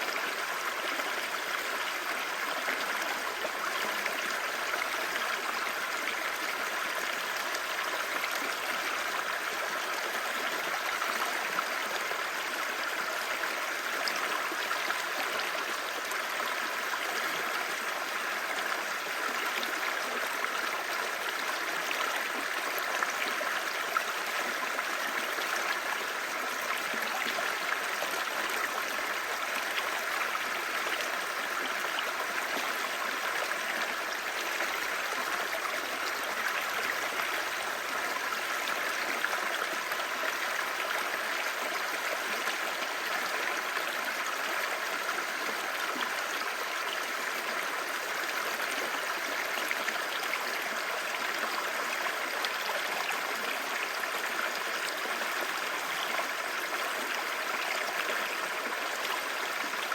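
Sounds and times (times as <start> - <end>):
stream babbling: 0.0 - 59.9.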